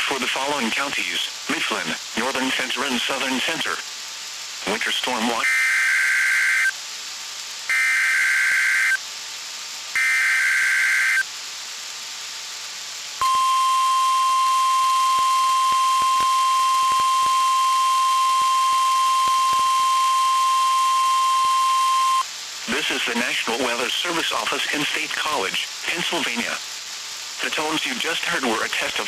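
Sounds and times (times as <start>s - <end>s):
steady alarm tone: 5.4s - 6.7s, 7.7s - 9.0s, 10.0s - 11.2s, 13.2s - 22.2s
warbling data bursts: 13.2s - 23.5s.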